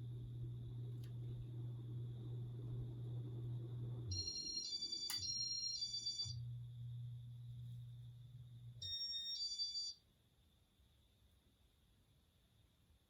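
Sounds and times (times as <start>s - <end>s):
fan motor hum: 0.0s - 8.8s.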